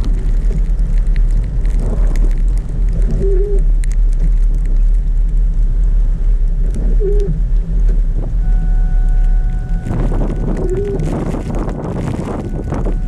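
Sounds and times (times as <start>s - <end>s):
faint clicks: 0.0s - 5.5s
car driving through snow: 0.0s - 13.0s
low squeak-like tone: 6.8s - 7.4s, 8.3s - 11.5s, 12.2s - 13.0s.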